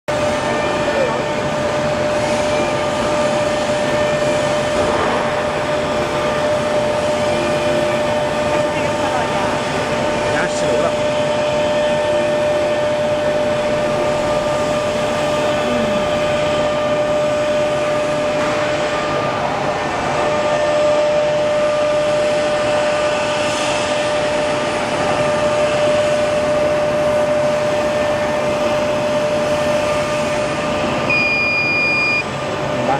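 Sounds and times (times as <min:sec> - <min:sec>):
constant machine whine: 0:00.1 - 0:32.9
laser cutting machine running: 0:00.1 - 0:32.9
high-pitched beep: 0:31.1 - 0:32.2.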